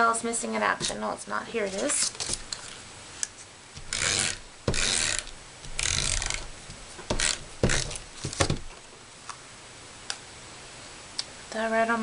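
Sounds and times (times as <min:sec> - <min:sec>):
tape runner ratcheting whir: 0:03.8 - 0:08.4.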